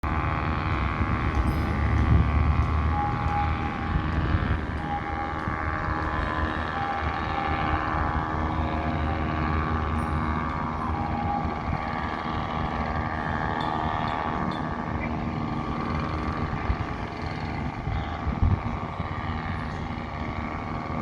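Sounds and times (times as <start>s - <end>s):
boat engine rumbling: 0.0s - 21.0s.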